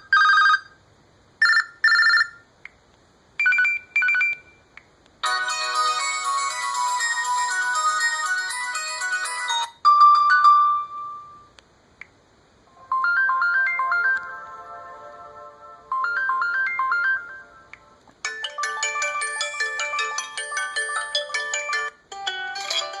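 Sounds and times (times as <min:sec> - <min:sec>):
smartphone ringtones: 0:01.4 - 0:02.4, 0:05.2 - 0:11.5, 0:12.8 - 0:15.3, 0:15.9 - 0:23.0.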